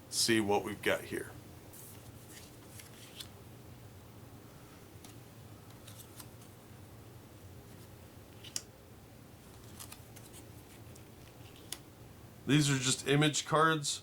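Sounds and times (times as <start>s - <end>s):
faint low hum: 0.0s - 14.0s
playing cards clicking: 5.0s - 6.5s, 8.4s - 8.7s, 9.5s - 11.8s.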